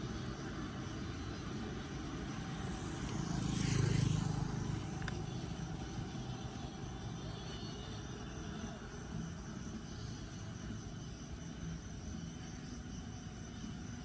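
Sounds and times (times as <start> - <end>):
vehicle passing by: 1.4 - 7.6.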